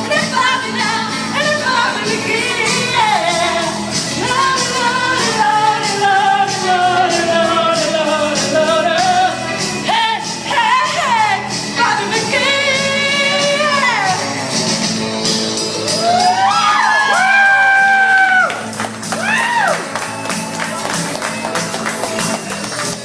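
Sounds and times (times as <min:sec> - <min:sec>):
woman singing: 0:00.0 - 0:14.3
karaoke backing track: 0:00.0 - 0:23.0.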